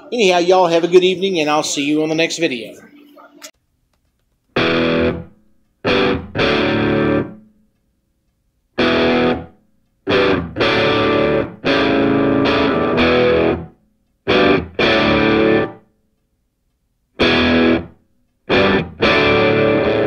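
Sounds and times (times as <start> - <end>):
distorted electric guitar chords: 4.6 - 7.4, 8.8 - 13.7, 14.3 - 15.8, 17.2 - 20.0.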